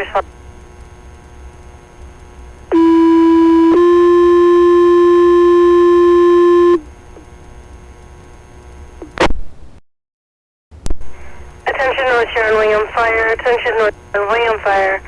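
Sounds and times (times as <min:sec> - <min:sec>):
low radio hiss: 0:00.0 - 0:07.4, 0:10.8 - 0:15.0
two-tone paging tones: 0:02.7 - 0:06.8.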